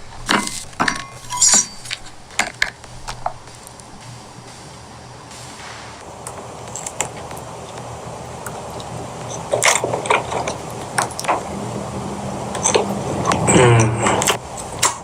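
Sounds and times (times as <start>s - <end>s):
utensils clicking and knocking: 0.0s - 5.6s
steady low hum: 0.0s - 14.7s.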